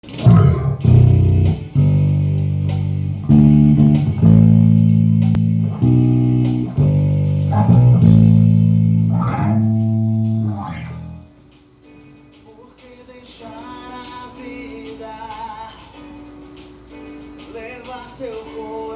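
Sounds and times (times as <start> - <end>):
electric bass notes ringing: 0.0 - 11.4.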